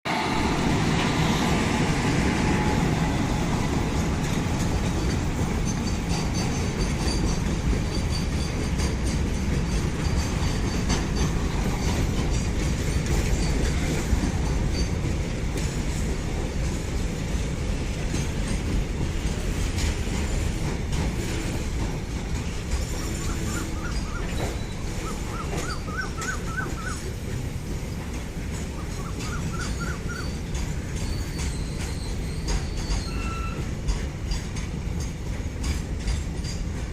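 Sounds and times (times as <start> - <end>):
train rumbling past: 0.0 - 36.9
wheels clattering over rail joints: 0.1 - 36.9.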